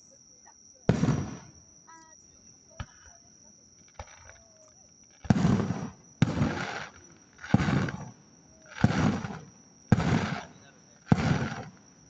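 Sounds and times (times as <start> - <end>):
high insect trill: 0.0 - 12.0
firework shells bursting: 0.9 - 1.6, 3.8 - 12.0.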